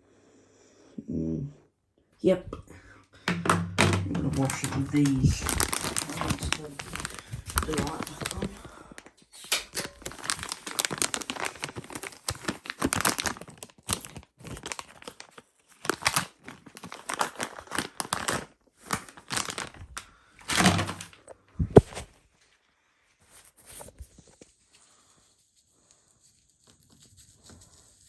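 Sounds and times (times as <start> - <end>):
wet wipes packet crinkling: 3.4 - 21.2, 23.2 - 28.0.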